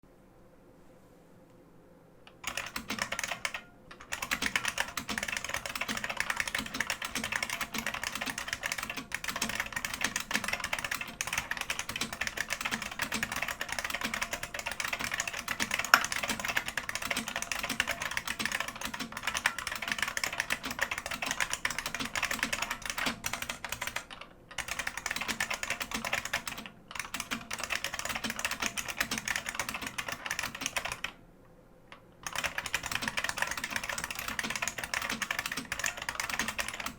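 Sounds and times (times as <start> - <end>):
mechanical keyboard typing: 2.3 - 31.2, 32.2 - 36.9.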